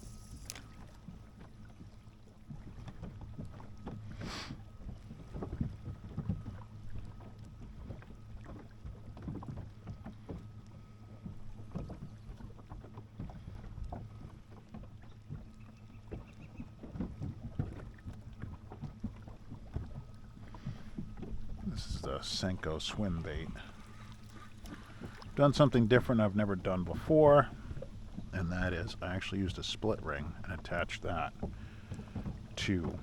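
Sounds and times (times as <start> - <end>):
wind rumbling on microphone: 19.8 - 25.5.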